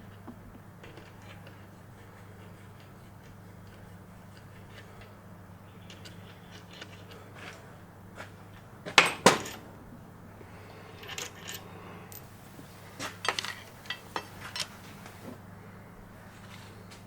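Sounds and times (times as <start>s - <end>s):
metal tools clinking on engine parts: 0.8s - 9.8s, 10.8s - 12.3s, 13.0s - 15.0s.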